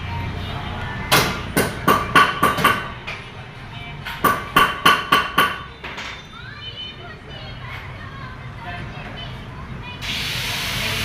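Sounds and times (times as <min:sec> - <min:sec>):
hammer striking metal: 0:01.1 - 0:03.0, 0:04.1 - 0:06.2.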